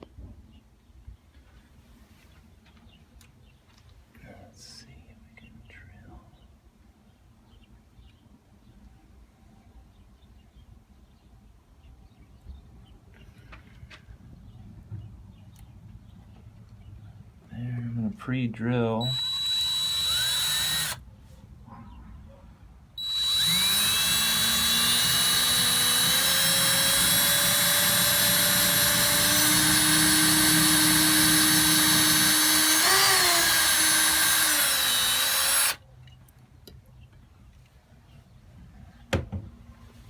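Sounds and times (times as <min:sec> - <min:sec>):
electric drill whining: 0:19.0 - 0:21.0, 0:23.0 - 0:35.8.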